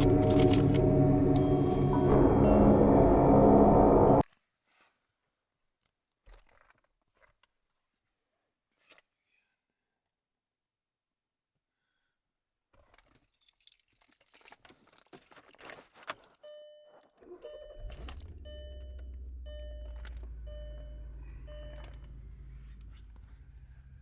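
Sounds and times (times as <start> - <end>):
car keys jangling: 0.0 - 2.2
car warning chime beeping: 0.0 - 3.0, 16.5 - 23.0
car engine idling: 0.0 - 4.2, 17.7 - 24.0.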